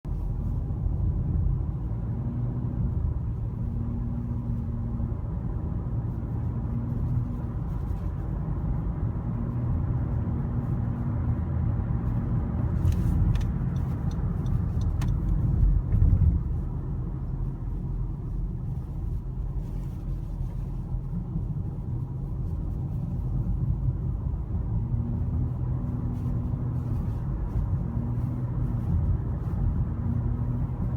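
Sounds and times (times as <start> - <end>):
car engine low rumble: 0.0 - 30.9
car hum: 0.0 - 30.9.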